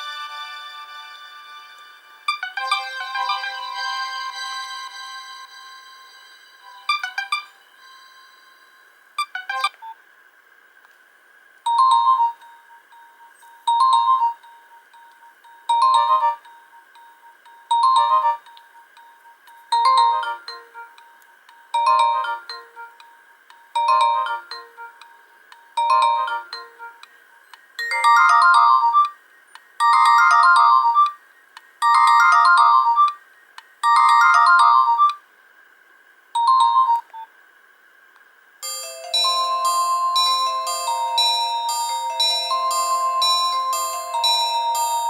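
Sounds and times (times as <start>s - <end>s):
bell-like chime ringtone: 11.7s - 20.9s, 21.8s - 22.8s, 27.8s - 29.1s, 29.8s - 31.2s, 31.8s - 33.1s, 33.8s - 35.2s, 38.6s - 45.0s
beeping phone ringtone: 11.7s - 21.0s, 21.6s - 23.0s, 23.8s - 27.0s, 27.8s - 29.2s, 29.8s - 31.2s, 31.8s - 33.2s, 33.8s - 35.2s, 36.4s - 37.3s, 38.6s - 45.0s.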